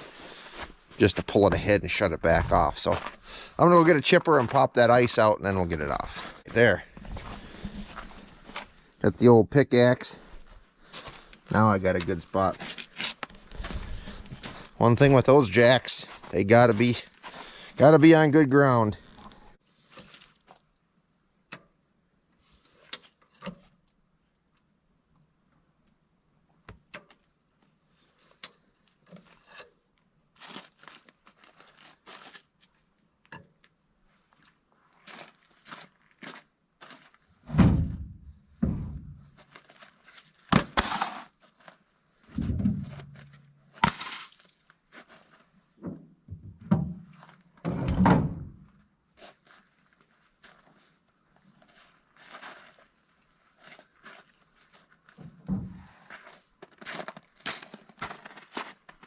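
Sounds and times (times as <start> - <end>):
metal knocks and clanks: 37.5 - 39.3, 42.3 - 43.4.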